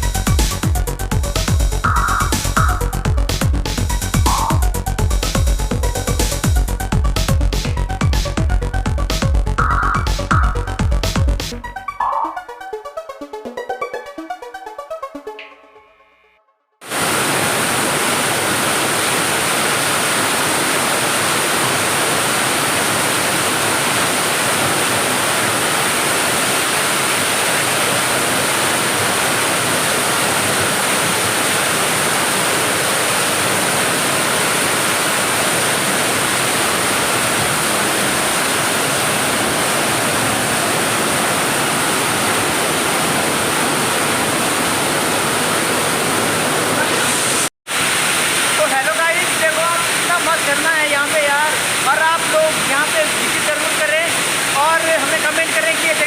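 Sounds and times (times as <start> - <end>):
electronic music with steady beat: 0.0 - 16.4
waterfall rushing: 1.9 - 3.1, 16.8 - 56.0.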